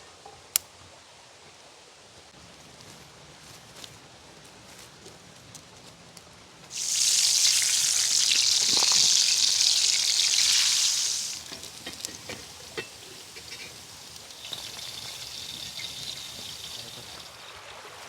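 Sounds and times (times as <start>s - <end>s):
oil popping: 6.7s - 17.4s
food sizzling in hot oil: 6.7s - 18.0s.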